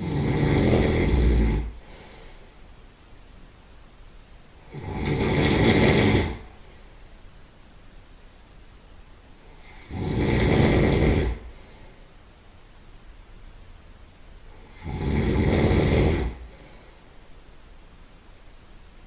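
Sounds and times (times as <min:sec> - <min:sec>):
loud nasal snoring: 0:00.0 - 0:02.0, 0:04.6 - 0:06.6, 0:09.5 - 0:11.8, 0:14.5 - 0:16.8.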